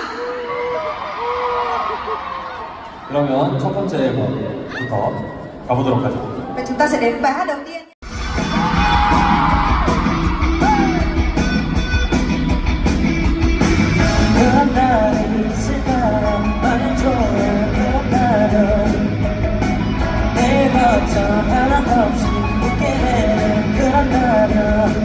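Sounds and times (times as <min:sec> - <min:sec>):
live rock band playing: 0:08.0 - 0:25.0
person singing: 0:14.0 - 0:25.0.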